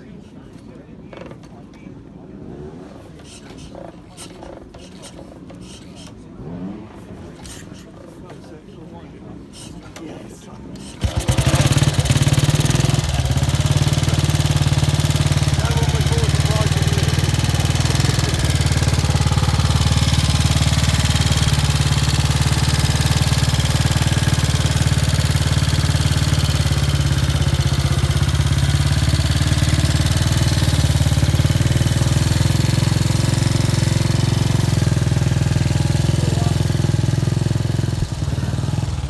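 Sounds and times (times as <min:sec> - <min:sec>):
motorcycle engine running: 0:11.0 - 0:39.0.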